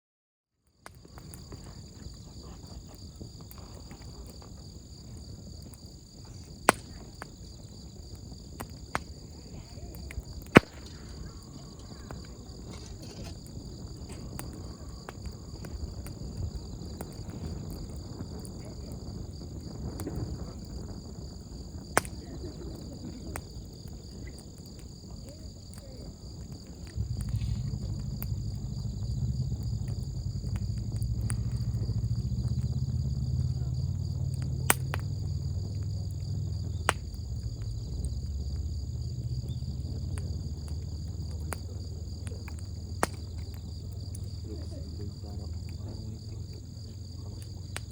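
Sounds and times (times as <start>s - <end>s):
campfire burning and popping: 0.6s - 47.9s
insects chirring: 0.7s - 47.9s
low rumble: 26.7s - 47.9s.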